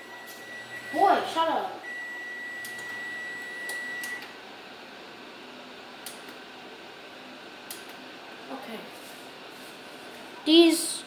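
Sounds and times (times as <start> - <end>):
electronic beeper high tone: 0.1 - 4.2.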